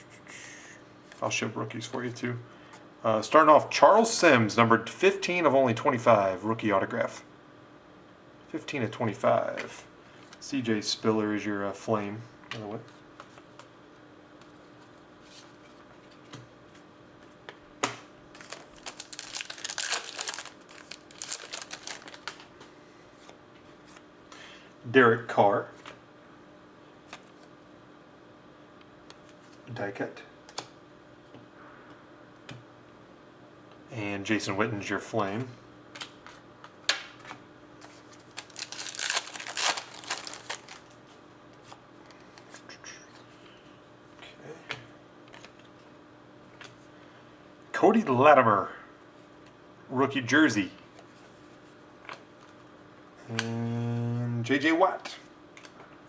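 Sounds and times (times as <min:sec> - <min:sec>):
foil wrapper crinkling: 0:18.3 - 0:22.5, 0:37.8 - 0:41.0.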